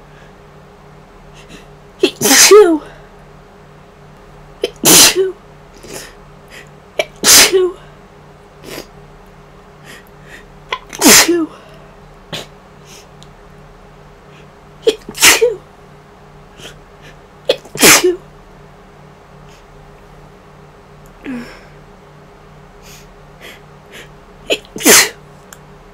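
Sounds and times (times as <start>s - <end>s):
woman sneezing: 1.4s - 2.9s, 4.6s - 5.4s, 7.0s - 7.8s, 10.8s - 11.6s, 14.9s - 15.6s, 17.5s - 18.2s, 24.5s - 25.2s.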